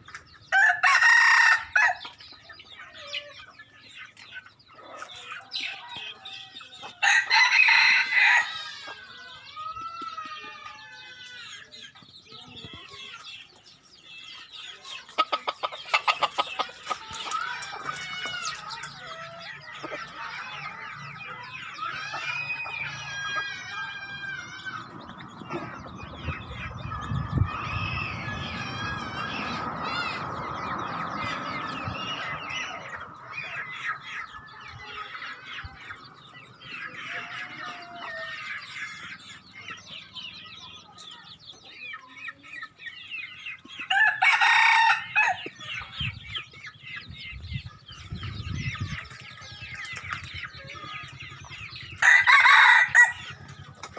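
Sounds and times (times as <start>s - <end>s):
chicken clucking and calling: 0.0s - 53.9s
rooster crowing: 0.5s - 2.0s, 7.0s - 9.0s, 43.9s - 45.5s, 52.0s - 53.4s.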